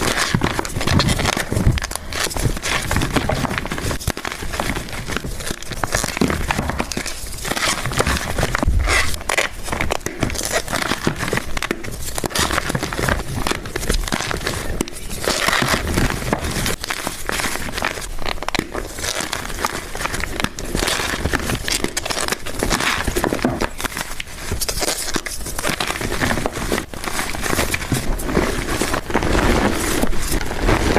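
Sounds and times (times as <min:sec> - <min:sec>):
chalk being crushed: 0:00.0 - 0:30.9.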